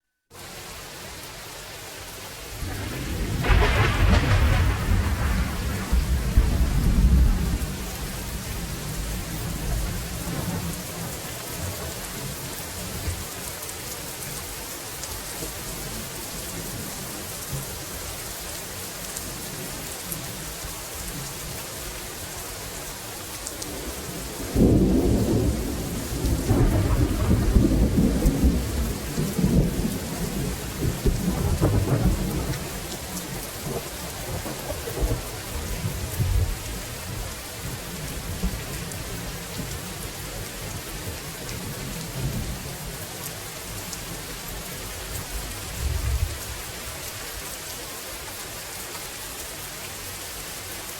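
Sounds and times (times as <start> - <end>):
rain hissing: 0.3 - 50.9
thunder rumbling: 2.5 - 13.3, 23.7 - 40.0, 43.6 - 46.8.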